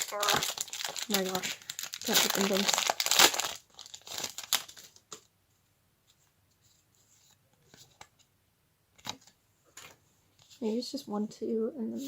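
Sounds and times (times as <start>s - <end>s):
trading cards rustling: 0.0s - 5.0s.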